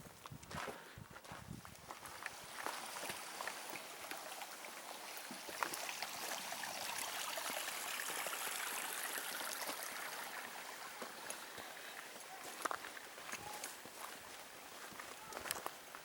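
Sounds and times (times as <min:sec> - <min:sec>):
footsteps on trail: 0:00.0 - 0:06.1, 0:09.4 - 0:16.0
mountain stream rushing: 0:02.1 - 0:15.2.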